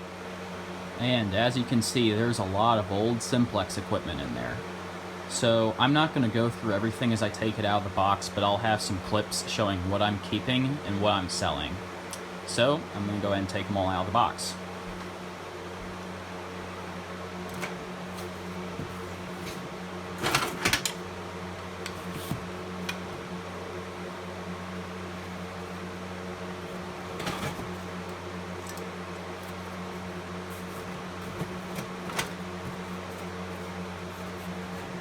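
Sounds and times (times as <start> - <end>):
knocks and clicks of handling: 17.5 - 21.0, 26.7 - 35.0.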